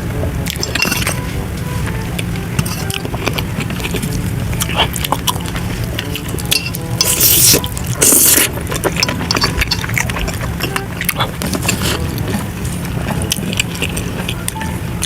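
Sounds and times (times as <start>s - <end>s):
wet chewing: 0.0s - 15.0s
slurps: 1.8s - 14.7s.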